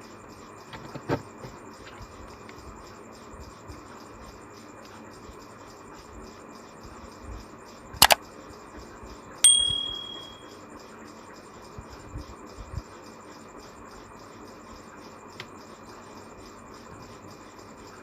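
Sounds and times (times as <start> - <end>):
phone electronic chime: 9.4 - 10.5.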